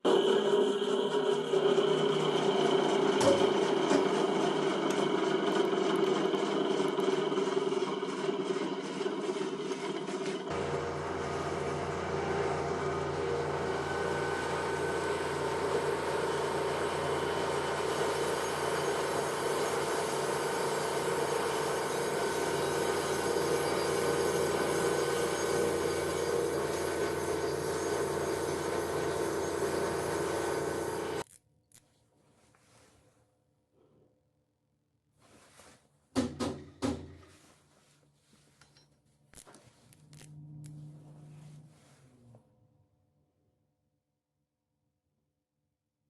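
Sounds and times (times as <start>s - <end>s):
grinding machine running: 0.0s - 31.2s
deep machine hum: 10.5s - 31.2s.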